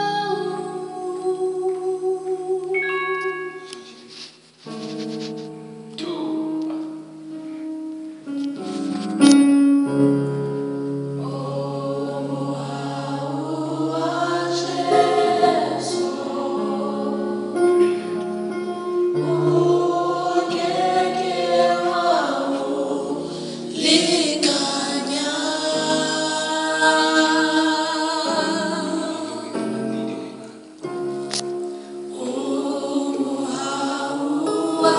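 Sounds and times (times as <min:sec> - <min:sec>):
choir singing gospel in harmony: 0:00.0 - 0:02.9, 0:10.8 - 0:30.4, 0:31.8 - 0:34.9.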